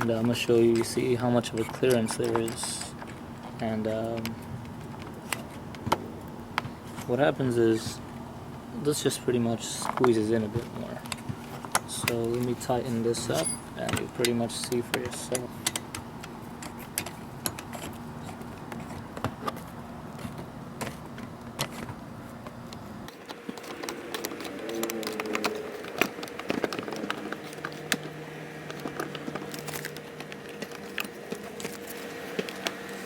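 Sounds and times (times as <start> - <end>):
low background hum: 0.0 - 33.0.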